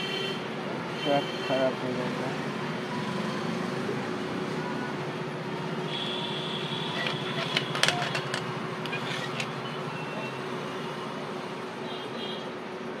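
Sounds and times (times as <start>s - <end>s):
tools clicking on circuit board: 7.0s - 9.6s.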